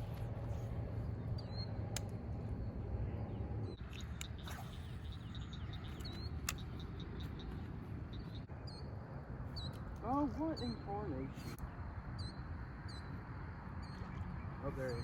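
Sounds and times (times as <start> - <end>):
steady low rumble: 0.0 - 14.8
small birds chirping: 0.0 - 15.0
sharp clicks: 6.0 - 7.0.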